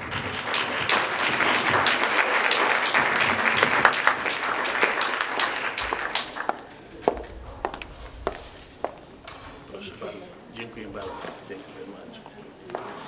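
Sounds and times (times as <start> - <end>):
audience applauding: 0.0 - 8.4.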